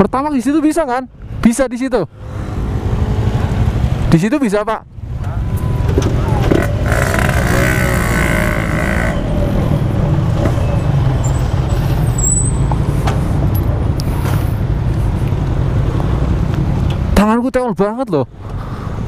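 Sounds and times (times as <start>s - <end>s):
motorcycle engine rumbling: 2.2s - 17.2s.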